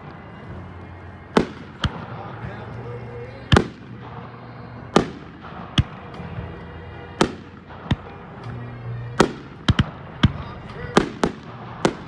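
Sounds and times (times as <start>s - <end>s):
fireworks bangs: 1.2s - 12.0s.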